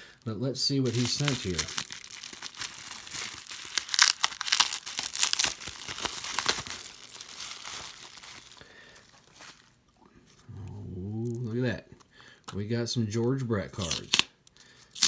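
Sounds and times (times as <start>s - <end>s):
packaging crinkling and tearing: 0.7s - 9.9s, 13.8s - 14.3s
faint rustling: 6.3s - 10.8s.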